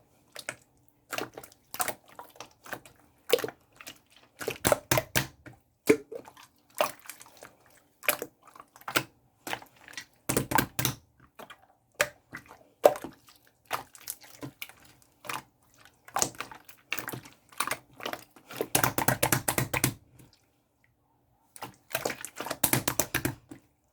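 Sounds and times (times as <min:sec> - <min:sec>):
slime clicking and popping: 0:18.7 - 0:20.0, 0:22.6 - 0:23.4.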